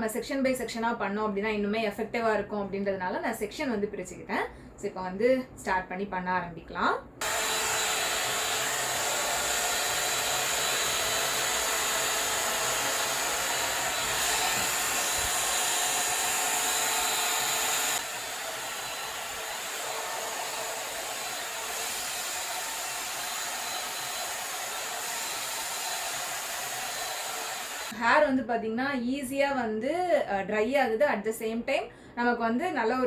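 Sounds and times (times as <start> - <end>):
hot air brush dryer blowing: 7.2 - 28.0.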